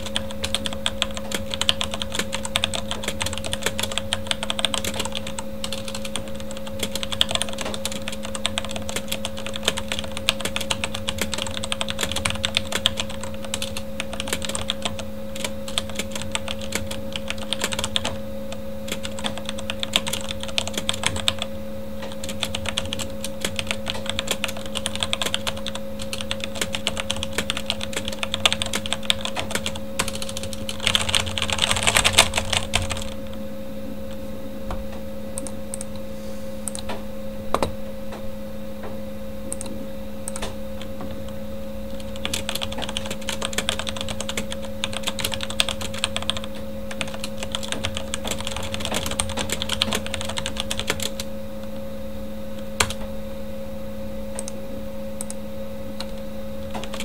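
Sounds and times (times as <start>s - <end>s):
mechanical keyboard typing: 0.0s - 18.2s, 18.9s - 33.4s, 41.9s - 51.3s, 52.8s - 53.0s, 56.0s - 57.0s
computer fan hum: 0.0s - 57.0s.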